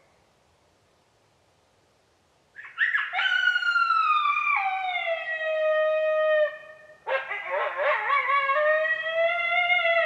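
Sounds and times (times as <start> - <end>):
coyote howling: 2.6 - 10.0.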